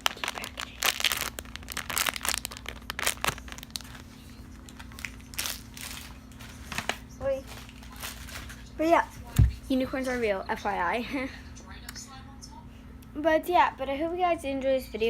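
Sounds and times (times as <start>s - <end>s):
packaging rustling and crinkling: 0.0s - 9.0s
faint steady hum: 0.0s - 15.0s.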